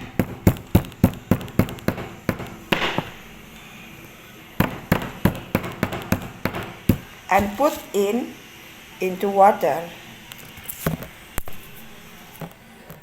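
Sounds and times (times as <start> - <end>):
knife chopping on cutting board: 0.0 - 3.2, 4.6 - 7.9
knife scraping board: 7.3 - 7.9.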